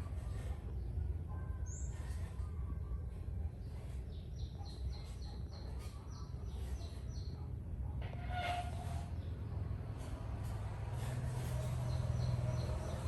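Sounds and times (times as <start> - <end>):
bird chirping: 11.8 - 13.0.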